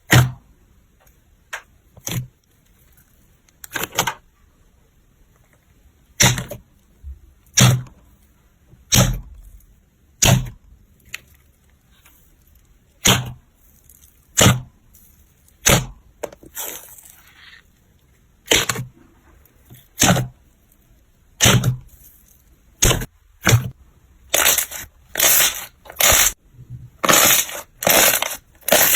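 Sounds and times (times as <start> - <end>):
crunchy slime crackling: 16.5 - 17.6, 24.3 - 26.4, 27.0 - 28.9.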